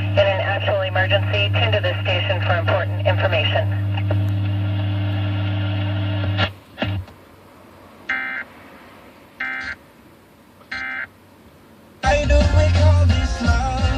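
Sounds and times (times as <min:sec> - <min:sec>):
digital data tone bursts: 0:08.1 - 0:08.4, 0:09.4 - 0:09.8, 0:10.7 - 0:11.1.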